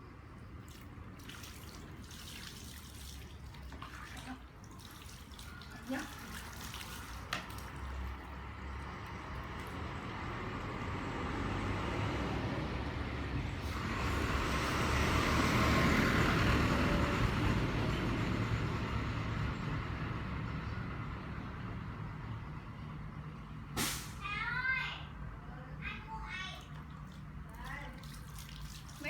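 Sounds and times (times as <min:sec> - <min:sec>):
road vehicle passing by: 0:05.3 - 0:24.4.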